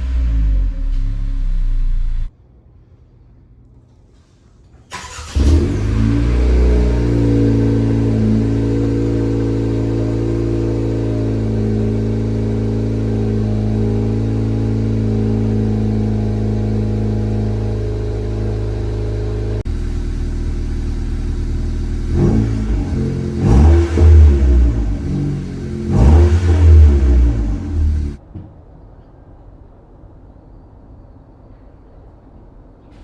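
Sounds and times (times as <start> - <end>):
car engine starting and idling: 0.0 - 2.3, 4.9 - 28.2.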